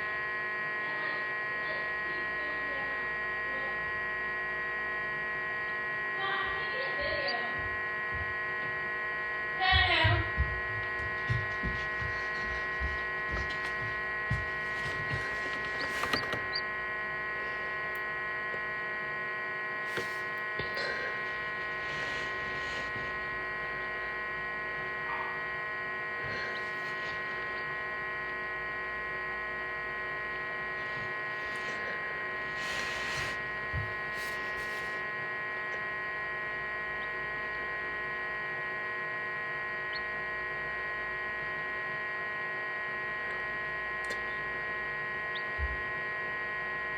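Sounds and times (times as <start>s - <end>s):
incubator electric hum: 0.0s - 46.9s
faint scratching: 14.6s - 16.6s, 32.5s - 35.0s.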